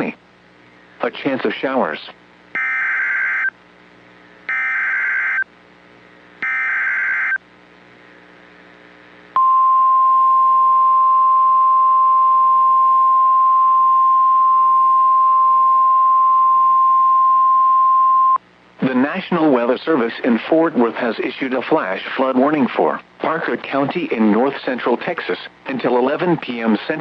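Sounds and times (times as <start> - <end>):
steady warning alarm tone: 2.6 - 3.5, 4.5 - 5.5, 6.4 - 7.4.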